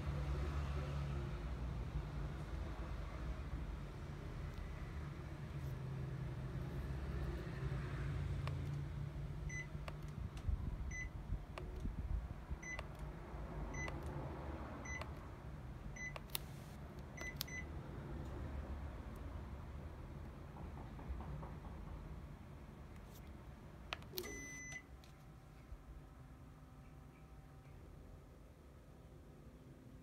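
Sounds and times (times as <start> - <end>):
low steady hum: 0.0 - 19.8, 22.8 - 30.0
air conditioner short beeps: 9.4 - 10.0, 10.8 - 11.8, 12.6 - 12.9, 13.7 - 14.1, 14.8 - 15.2, 16.0 - 16.4, 17.2 - 17.7, 24.0 - 25.0.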